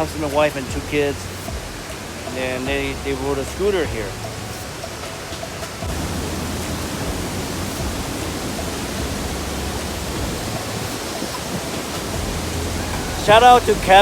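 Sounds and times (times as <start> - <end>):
waterfall rushing: 0.0 - 14.0
low rumble: 5.8 - 14.0.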